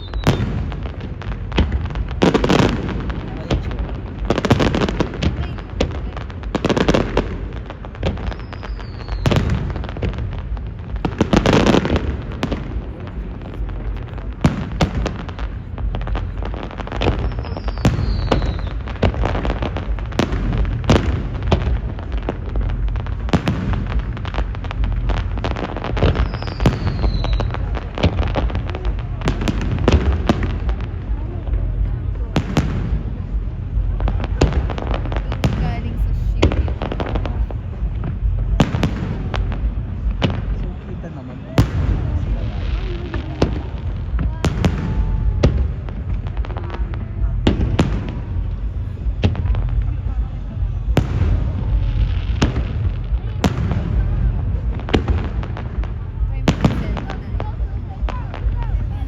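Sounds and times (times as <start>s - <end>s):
falling firework whistle: 0.0s - 0.8s, 8.2s - 9.6s, 17.1s - 18.8s, 26.2s - 27.6s
firework bangs and crackles: 0.0s - 59.0s
firework booms: 0.0s - 59.0s.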